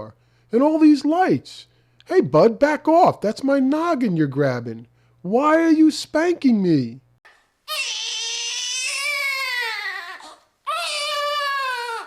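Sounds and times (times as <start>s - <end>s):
newborn baby crying: 7.6s - 12.0s.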